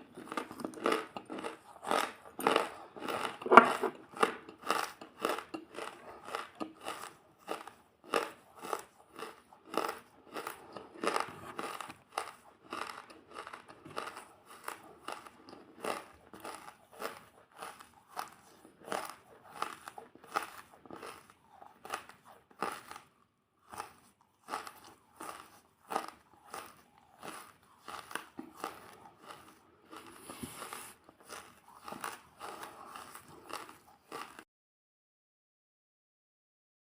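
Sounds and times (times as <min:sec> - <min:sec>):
chewing crunchy food: 0:00.0 - 0:34.5.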